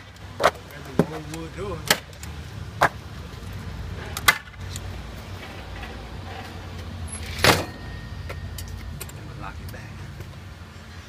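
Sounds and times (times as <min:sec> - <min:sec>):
door bang: 0:07.3 - 0:08.0.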